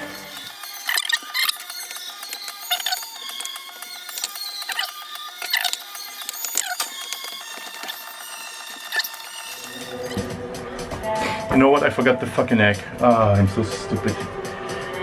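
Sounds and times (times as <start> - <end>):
glitchy electronic techno: 0.0 - 10.3.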